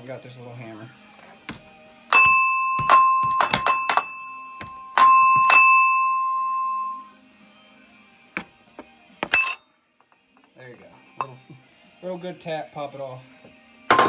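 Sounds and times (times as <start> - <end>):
hammer striking metal ringing: 2.1 - 7.0.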